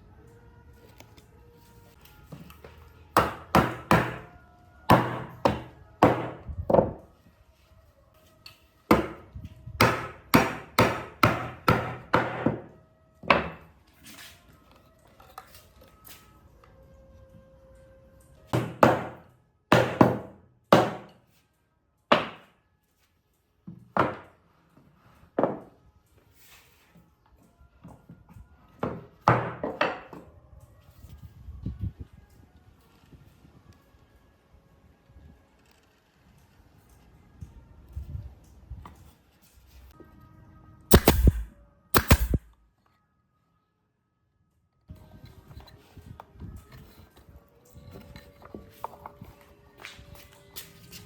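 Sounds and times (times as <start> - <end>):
wood being struck hard: 40.9 - 42.5.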